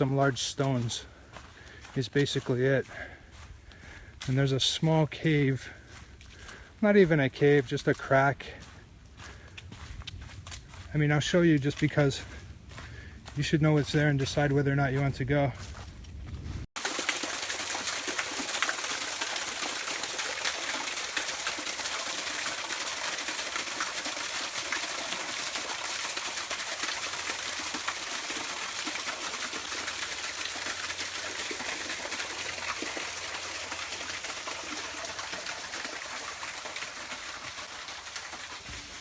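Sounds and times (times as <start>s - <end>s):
waterfall splashing over rocks: 16.8s - 39.0s.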